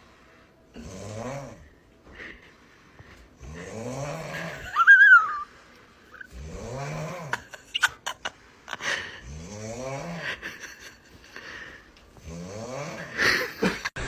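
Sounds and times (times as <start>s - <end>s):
person snoring: 0.7s - 1.7s, 3.4s - 5.4s, 6.2s - 7.6s, 8.8s - 10.4s, 12.2s - 13.6s.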